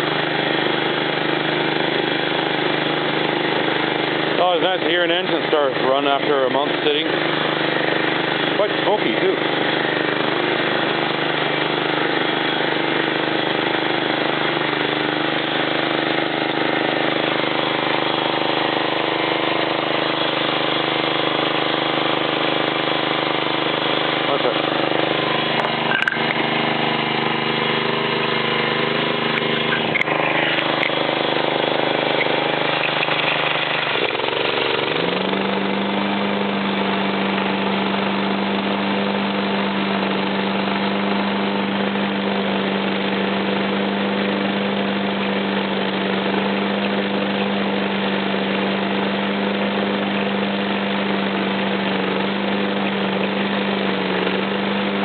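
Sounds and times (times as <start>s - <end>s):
lawn mower engine running: 0.0s - 55.0s.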